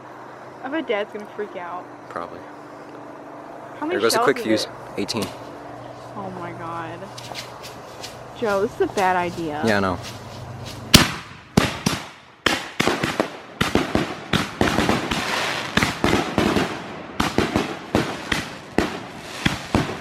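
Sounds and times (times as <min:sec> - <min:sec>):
firework launches and bursts: 0:10.9 - 0:20.0.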